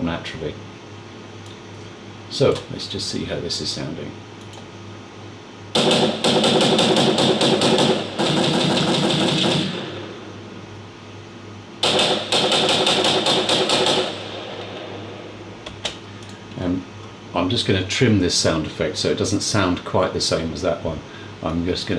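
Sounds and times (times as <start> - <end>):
machine-gun fire: 5.7 - 10.2, 11.8 - 15.3.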